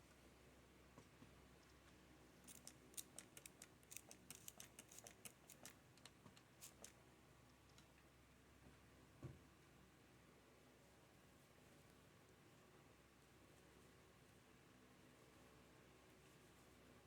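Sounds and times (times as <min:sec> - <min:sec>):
mechanical keyboard clicks: 0:02.5 - 0:06.9.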